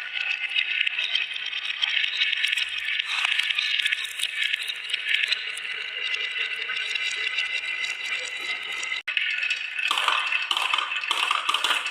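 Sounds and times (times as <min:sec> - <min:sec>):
marbles rattling down track: 0:09.2 - 0:11.9.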